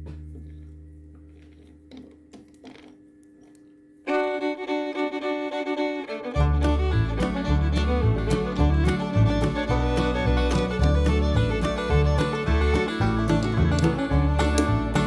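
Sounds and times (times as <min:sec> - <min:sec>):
bluegrass fiddle music: 0:04.1 - 0:15.0.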